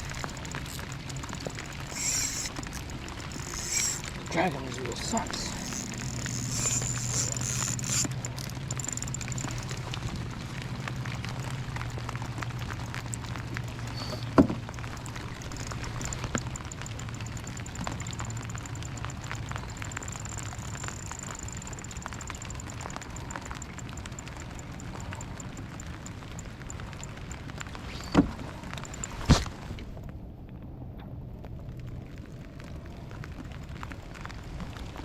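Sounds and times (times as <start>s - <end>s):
steady low hum: 0.0s - 26.9s
light rain pattering: 0.0s - 35.0s.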